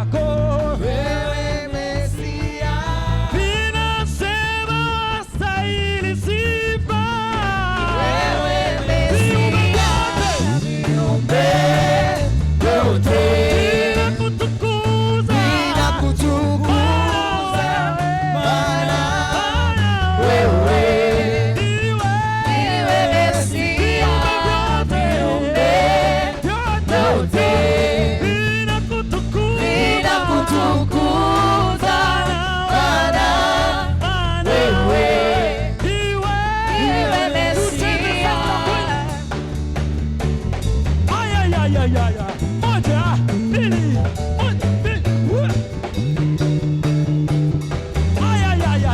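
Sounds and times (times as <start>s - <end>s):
bass and drum beat: 0.0s - 48.9s
voices singing: 0.6s - 3.7s, 7.7s - 39.3s.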